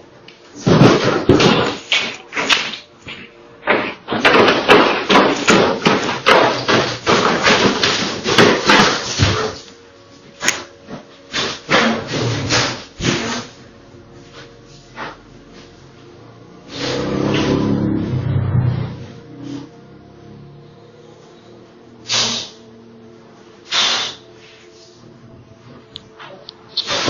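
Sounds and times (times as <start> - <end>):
heavy bangs on a door: 4.1 - 9.5.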